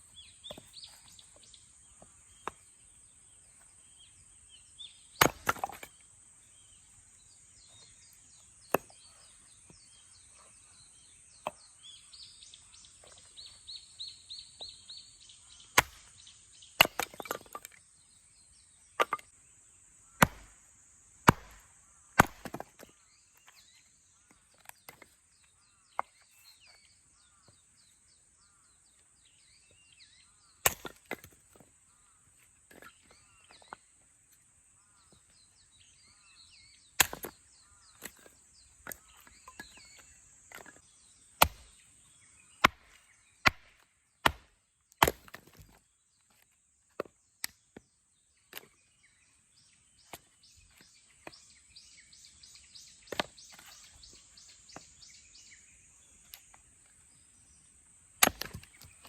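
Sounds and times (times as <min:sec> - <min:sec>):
birds chirping: 0:00.0 - 0:59.0
hatchet chopping wood: 0:05.1 - 0:06.0, 0:08.6 - 0:09.1, 0:15.7 - 0:16.2, 0:16.8 - 0:17.8, 0:19.0 - 0:19.3, 0:20.2 - 0:20.6, 0:21.2 - 0:23.6, 0:30.6 - 0:31.6, 0:36.9 - 0:41.8, 0:42.6 - 0:45.8, 0:53.1 - 0:54.9, 0:58.2 - 0:59.0.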